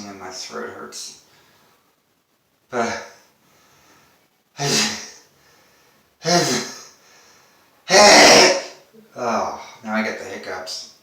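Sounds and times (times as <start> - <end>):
man sneezing: 4.6 - 5.3, 6.2 - 7.0, 7.9 - 8.9.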